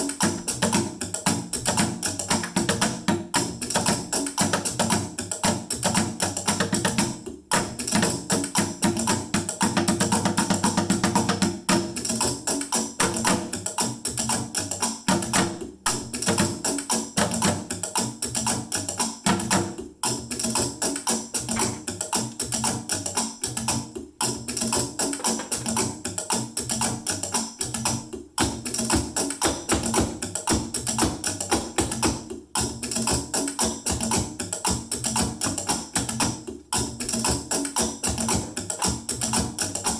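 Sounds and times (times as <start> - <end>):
percussion on found objects: 0.0 - 39.9
shaker-like rattles: 0.0 - 39.9.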